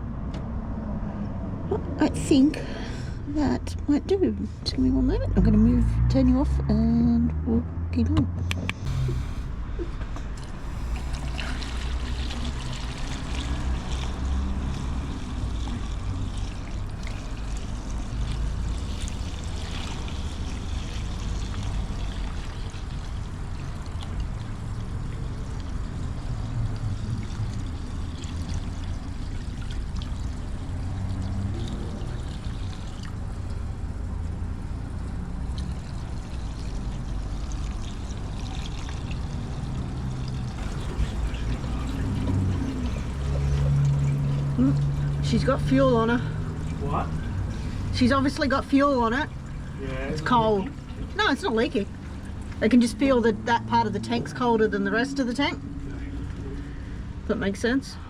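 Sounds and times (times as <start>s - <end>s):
fuel pouring into a tank: 8.8s - 53.1s, 55.8s - 57.2s.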